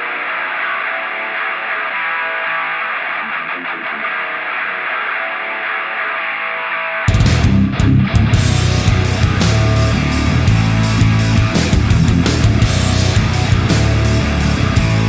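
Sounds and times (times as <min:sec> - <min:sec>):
thin electric guitar: 0:00.0 - 0:15.0
heavy metal band with drums: 0:07.0 - 0:15.0.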